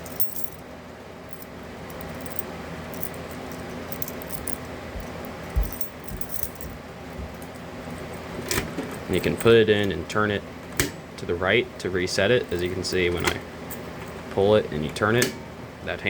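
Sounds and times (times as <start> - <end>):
keys jangling: 0.0 - 0.6, 1.3 - 6.8, 12.4 - 13.9
dull thump: 5.0 - 7.4.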